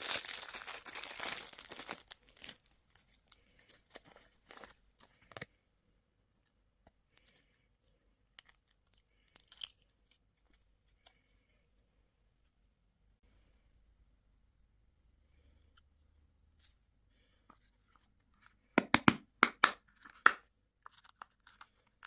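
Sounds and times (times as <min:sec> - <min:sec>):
plastic wrapper crinkling: 0:00.0 - 0:05.4, 0:08.4 - 0:10.0.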